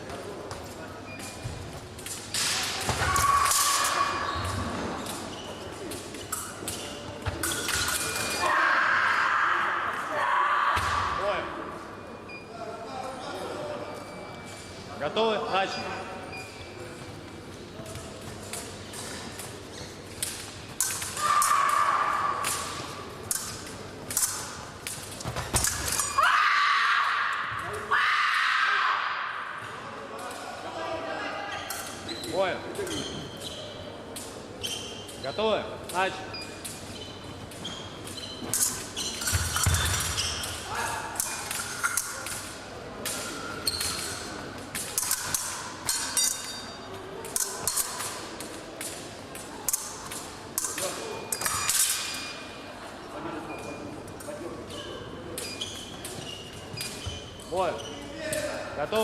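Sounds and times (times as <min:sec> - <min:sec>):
fencing blades clacking: 0:00.0 - 0:09.2, 0:17.3 - 0:26.6, 0:31.6 - 0:52.6, 0:53.5 - 0:59.0.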